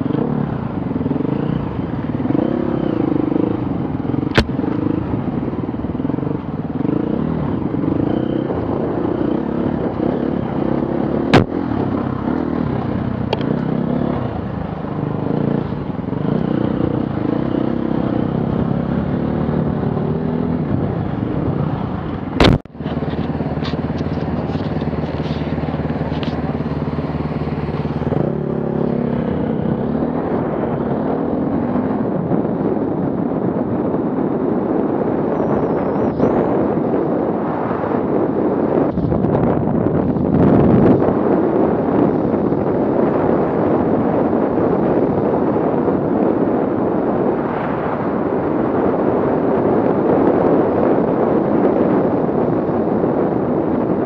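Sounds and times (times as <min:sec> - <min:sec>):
off-road vehicle engines revving: 0:00.0 - 0:32.1.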